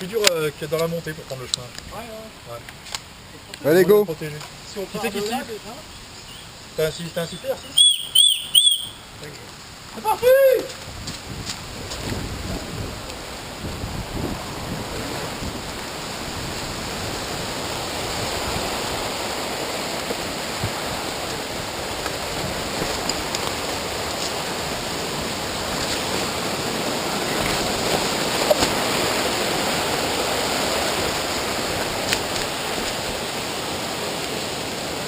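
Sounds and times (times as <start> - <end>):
river water rushing: 11.7 - 35.0.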